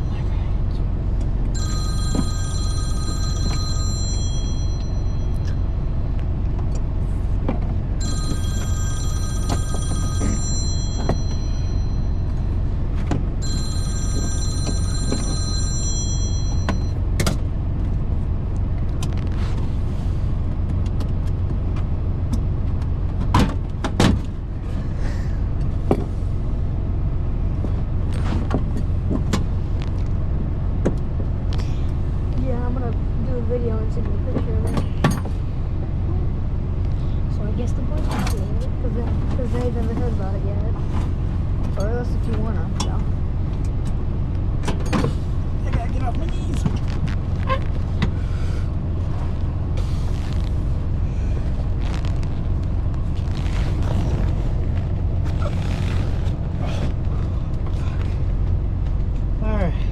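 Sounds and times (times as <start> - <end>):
electronic ringing tone: 1.5 - 6.1, 8.0 - 17.0
truck engine idling: 35.3 - 59.8.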